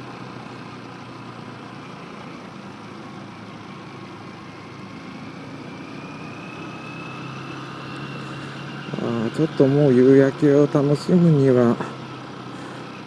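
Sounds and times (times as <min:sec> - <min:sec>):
motorcycle engine running at low revs: 0:00.0 - 0:13.0.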